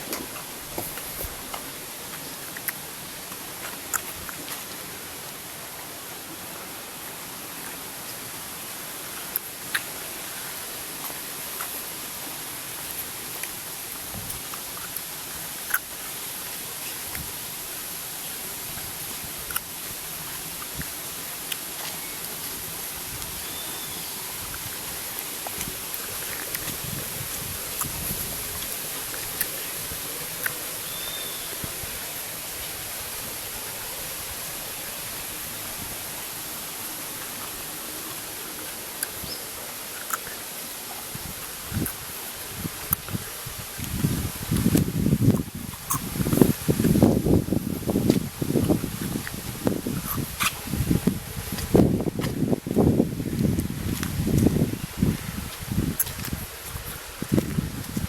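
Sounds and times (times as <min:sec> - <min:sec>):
waterfall rushing: 0:00.0 - 0:58.0
faint high chirp: 0:23.4 - 0:24.2, 0:30.8 - 0:31.6.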